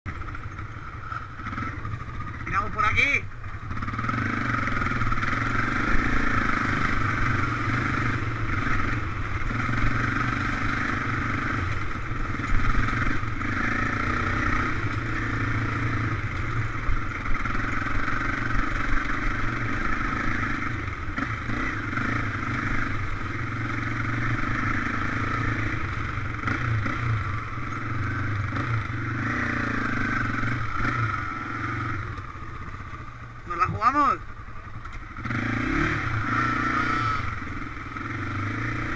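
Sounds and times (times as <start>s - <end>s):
off-road vehicle engine running: 0.1s - 38.9s.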